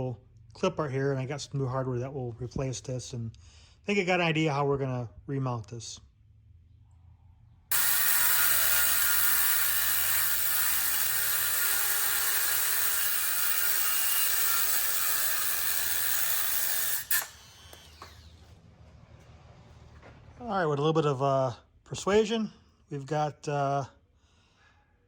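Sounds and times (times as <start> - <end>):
cutting wheel grinding steel: 7.7 - 18.5.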